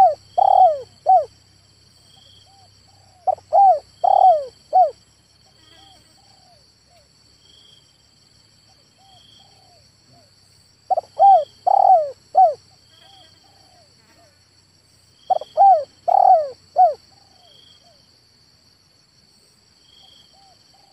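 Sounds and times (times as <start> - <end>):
dove cooing: 0.0 - 1.3, 2.5 - 5.0, 10.9 - 12.6, 15.3 - 17.6.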